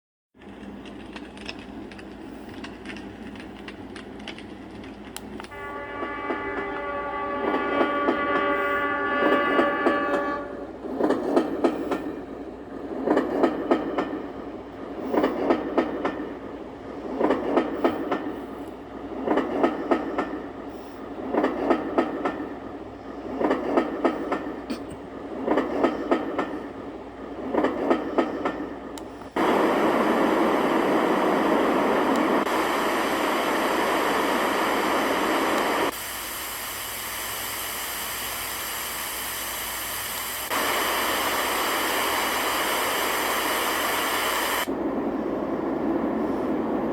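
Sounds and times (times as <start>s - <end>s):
train wheels clickety-clack: 0.4s - 29.5s.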